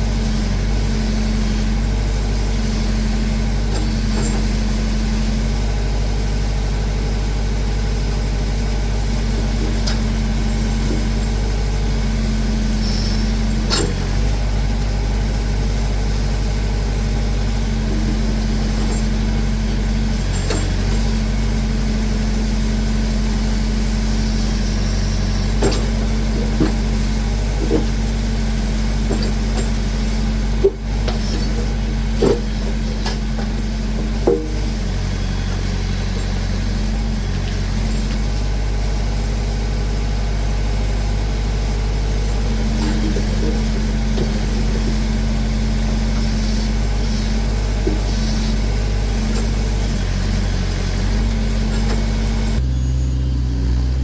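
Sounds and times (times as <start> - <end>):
backhoe engine running: 0.0 - 54.0
short knocks: 23.5 - 36.5.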